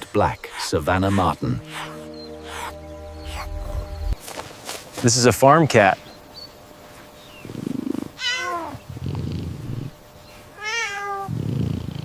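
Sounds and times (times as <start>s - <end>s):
cat meowing: 8.2s - 8.8s, 10.6s - 11.3s.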